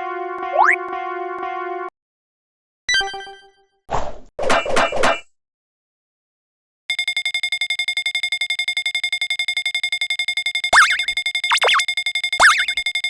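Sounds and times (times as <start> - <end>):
synthesized trilling ringtone: 0.4 - 0.9, 6.9 - 13.0
cartoon boing sound effects: 0.6 - 0.8.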